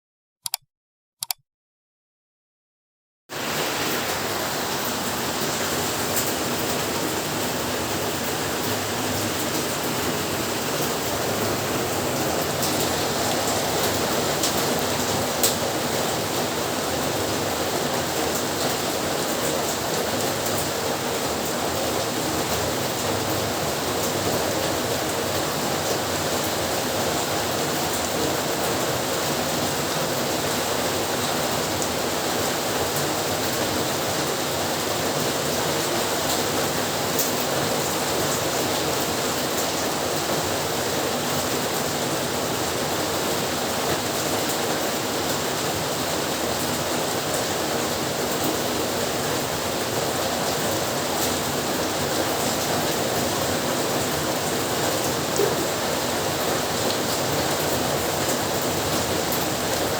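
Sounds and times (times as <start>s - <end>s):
brief clicks: 0.4s - 0.6s, 1.2s - 1.4s
heavy rain falling: 3.3s - 59.9s.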